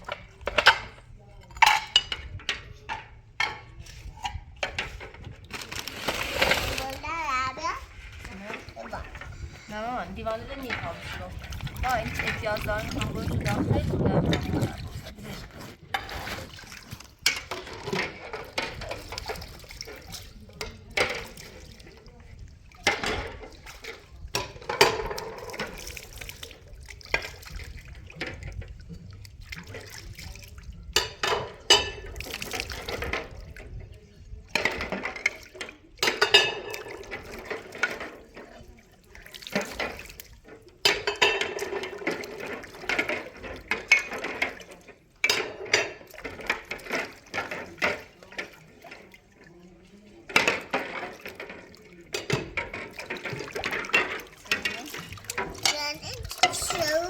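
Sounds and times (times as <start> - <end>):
dishes and cutlery clattering: 0.0 - 7.0, 7.7 - 28.8, 30.9 - 33.9, 34.5 - 49.1, 50.2 - 57.0
water running: 5.5 - 22.5, 49.9 - 57.0.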